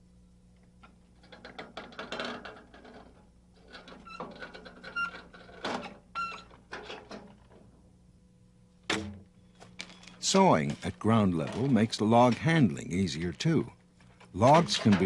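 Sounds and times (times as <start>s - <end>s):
metallic clicks and clanks: 14.2s - 15.0s.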